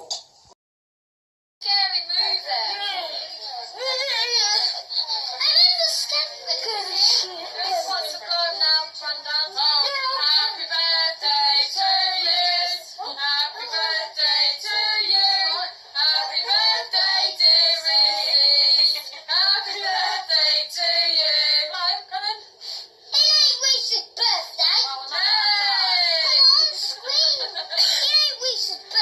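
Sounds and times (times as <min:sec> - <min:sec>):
women and children singing: 0:07.1 - 0:22.4.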